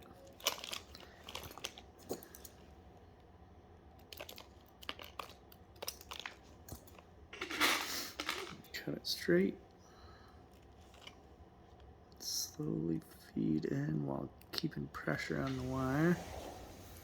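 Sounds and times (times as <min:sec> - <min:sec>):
wires crinkling and clicking: 0:00.0 - 0:03.3, 0:03.9 - 0:08.9, 0:10.5 - 0:12.3.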